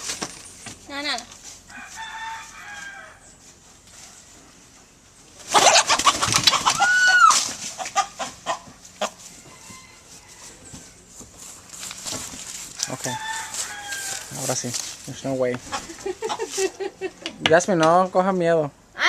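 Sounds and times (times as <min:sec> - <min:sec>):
rooster calling: 0:01.6 - 0:03.4, 0:05.4 - 0:11.1, 0:12.6 - 0:14.7
loud flurry of squawking: 0:05.4 - 0:08.6.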